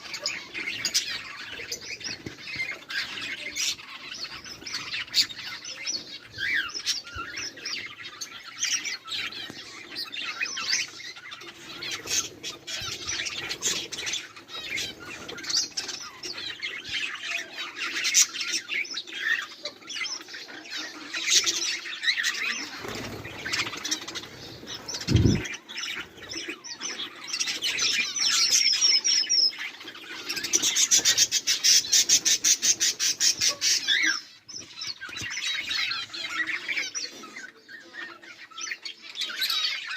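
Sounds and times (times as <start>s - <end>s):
budgerigars chattering and chirping: 0.0s - 39.9s.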